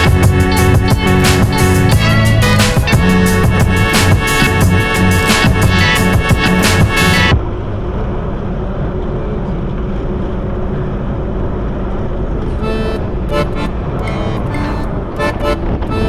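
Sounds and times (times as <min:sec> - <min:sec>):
short horn toots: 0:12.6 - 0:16.0.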